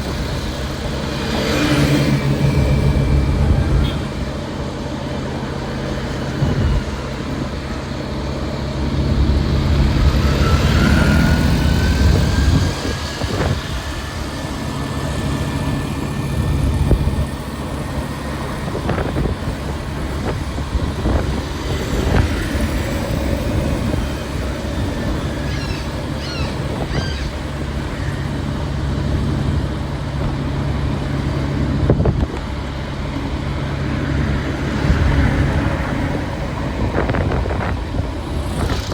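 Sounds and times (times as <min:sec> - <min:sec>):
rising whine: 0:00.0 - 0:38.9
traffic rumble: 0:00.0 - 0:38.9
short high squeaks: 0:24.7 - 0:28.5.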